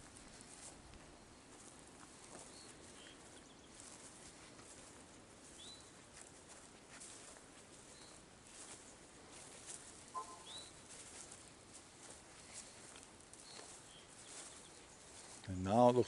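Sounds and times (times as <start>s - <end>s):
footsteps in grass: 0.0s - 16.0s
high bird chirps: 10.1s - 10.9s.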